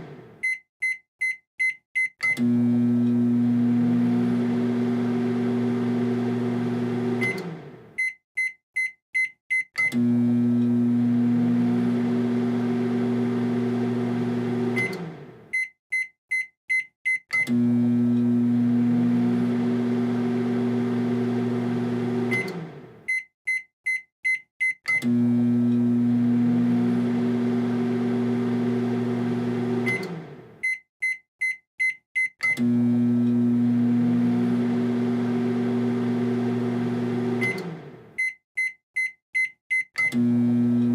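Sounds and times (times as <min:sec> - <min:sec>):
microwave oven humming: 0:02.3 - 0:07.9, 0:10.0 - 0:15.5, 0:17.5 - 0:23.0, 0:25.0 - 0:30.6, 0:32.6 - 0:38.2, 0:40.1 - 0:40.9.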